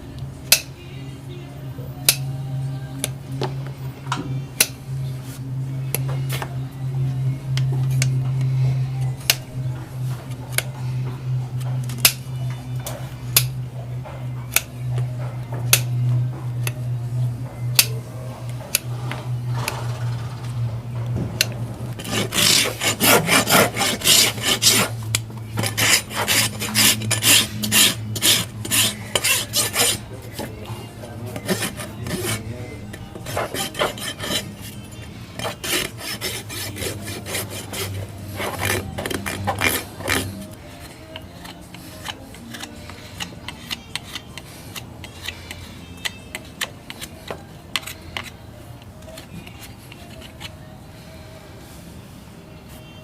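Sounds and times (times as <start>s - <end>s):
rasp filing horse hoof: 7.6s - 16.9s, 21.4s - 50.8s.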